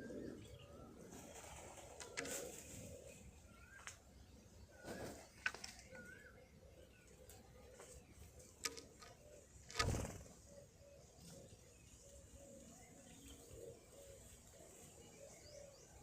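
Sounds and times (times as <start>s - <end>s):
pigeons cooing: 0.0s - 16.0s.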